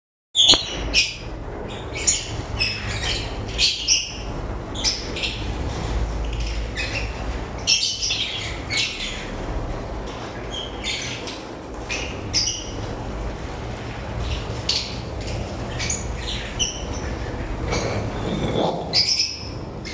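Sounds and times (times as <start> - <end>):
lovebirds chirping and squawking: 0.4 - 9.4, 14.2 - 19.9.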